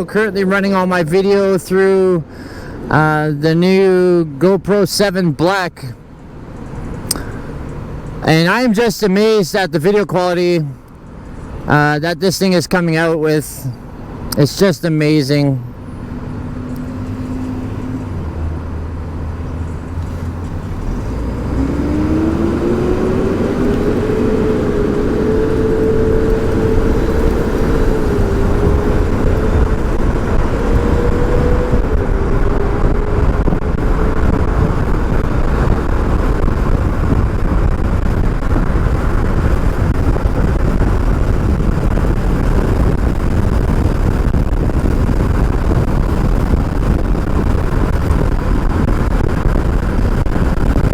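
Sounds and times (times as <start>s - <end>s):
wind and road noise: 0.0s - 50.9s
electric bike motor whining: 20.6s - 33.1s.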